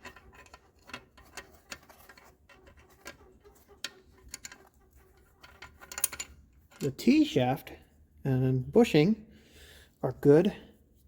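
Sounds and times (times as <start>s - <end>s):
metal engine parts clicking: 0.0s - 7.0s.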